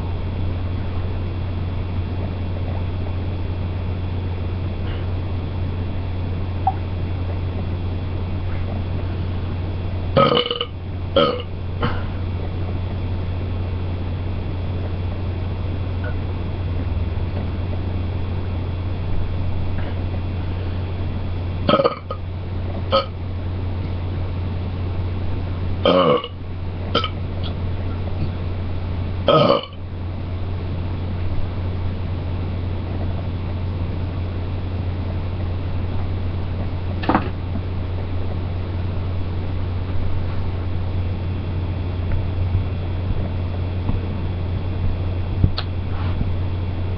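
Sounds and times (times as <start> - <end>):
steady low hum: 0.0 - 46.9
person burping: 10.2 - 12.0, 21.7 - 22.2, 25.8 - 26.4, 29.3 - 29.8.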